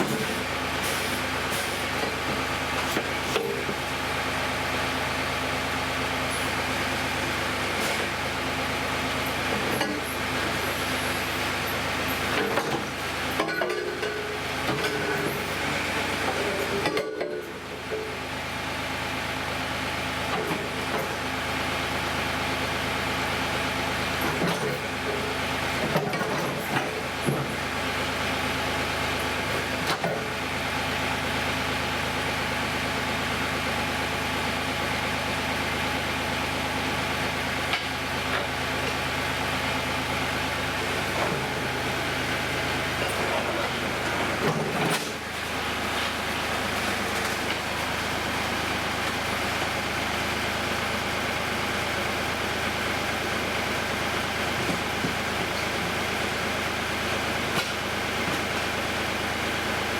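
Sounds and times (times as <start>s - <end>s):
heavy equipment engine running: 0.0s - 59.9s.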